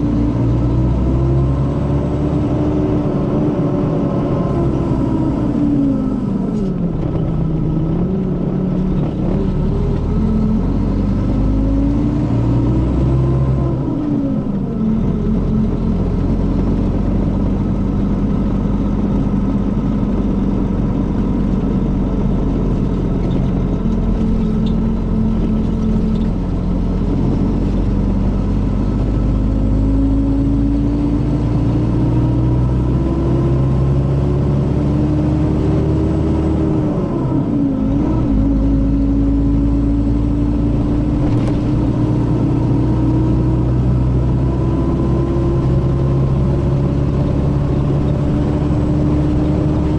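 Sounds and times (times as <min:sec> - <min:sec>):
diesel bus engine running: 0:00.0 - 0:49.9.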